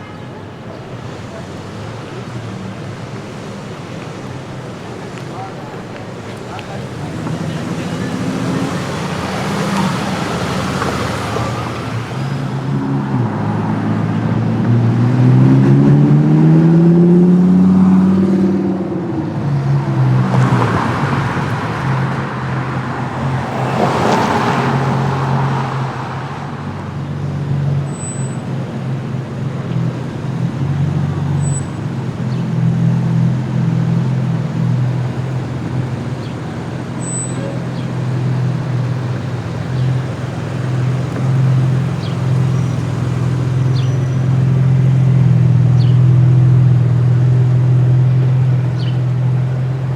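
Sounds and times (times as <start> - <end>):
rushing road noise: 0.0 - 49.9
sports car engine revving: 0.0 - 49.9.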